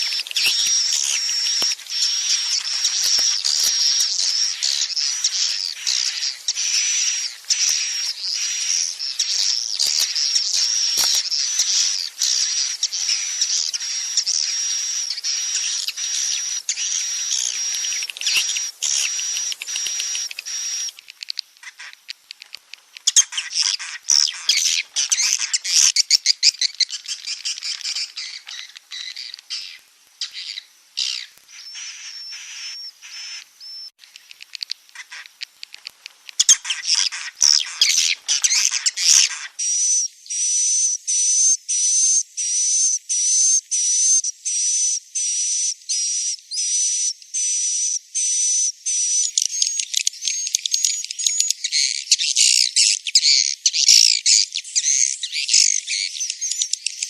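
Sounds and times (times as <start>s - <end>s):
swiftlets chittering trills: 0.0s - 21.0s
rapid bird clicking: 0.0s - 23.5s, 34.0s - 39.4s.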